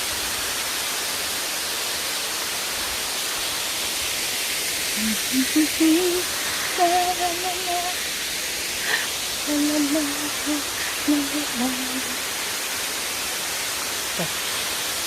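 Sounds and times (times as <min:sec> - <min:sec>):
waterfall rushing: 0:00.0 - 0:15.0
person humming: 0:05.0 - 0:08.0, 0:08.9 - 0:12.2, 0:14.2 - 0:14.5.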